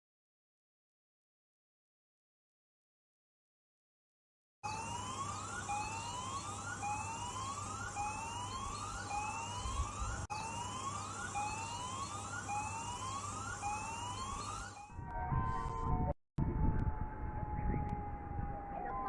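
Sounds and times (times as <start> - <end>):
steady siren tone: 4.6 - 19.0
warning siren whooping: 4.6 - 19.0.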